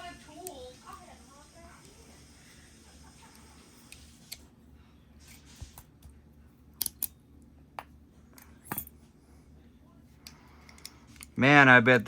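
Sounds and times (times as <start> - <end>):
padlock and tools clicking: 6.8 - 7.2.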